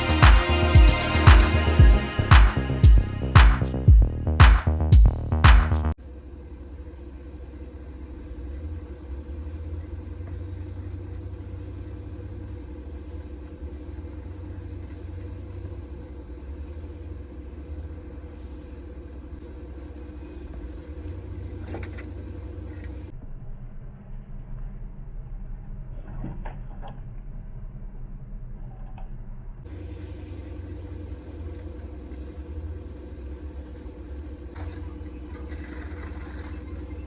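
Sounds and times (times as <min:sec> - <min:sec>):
diesel engine rumbling: 0:00.0 - 0:06.0.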